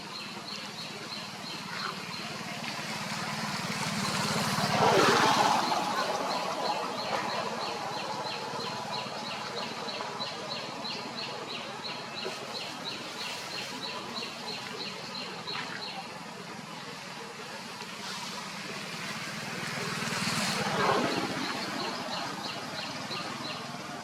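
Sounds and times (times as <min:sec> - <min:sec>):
outdoor background noise: 0:00.0 - 0:24.0.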